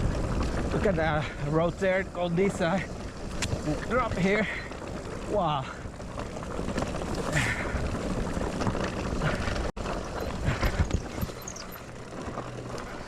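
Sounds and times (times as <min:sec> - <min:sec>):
bike rattling on dirt trail: 0:00.0 - 0:13.0
wind on microphone: 0:06.6 - 0:11.7.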